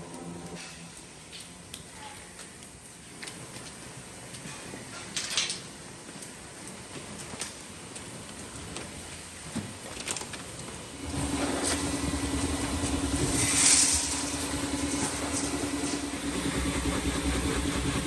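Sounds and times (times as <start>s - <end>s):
motor humming: 11.0s - 18.0s.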